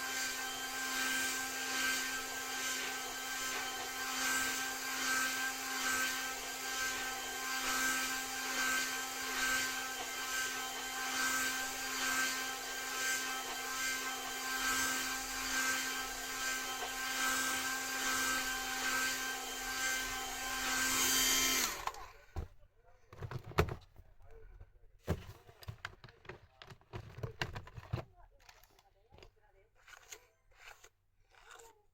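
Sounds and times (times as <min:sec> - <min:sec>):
hair dryer blowing: 0:00.0 - 0:22.0.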